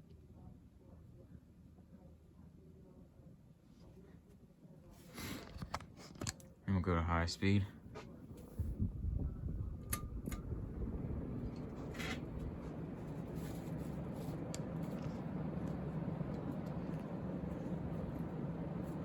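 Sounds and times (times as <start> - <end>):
ceiling fan air rush: 0.4 - 19.0
fan motor hum: 4.9 - 19.0.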